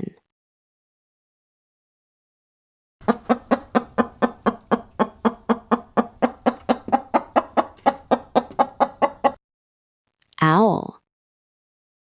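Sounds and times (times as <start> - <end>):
chicken clucking: 3.0 - 9.4.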